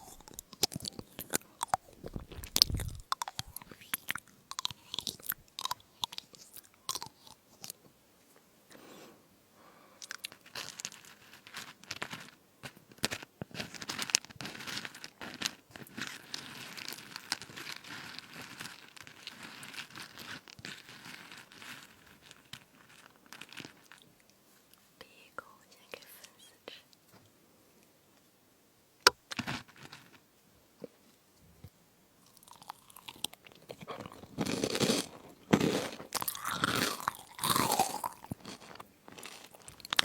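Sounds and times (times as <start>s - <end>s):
crunchy chewing: 0.0s - 7.8s, 10.0s - 12.2s, 32.2s - 40.0s.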